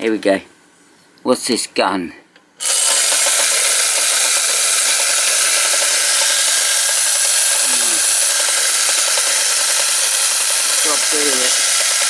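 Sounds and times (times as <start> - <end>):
wind-up toy rasping whirr: 2.6 - 12.0.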